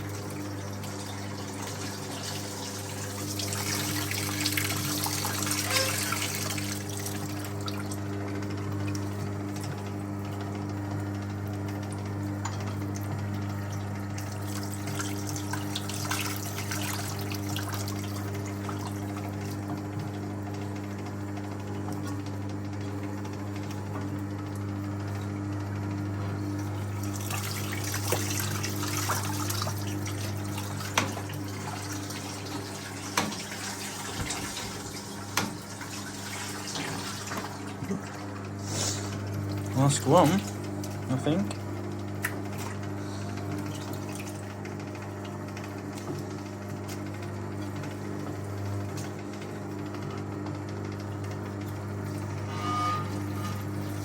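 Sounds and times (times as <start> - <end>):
washing machine motor hum: 0.0 - 54.0
water running and splashing: 26.9 - 38.2.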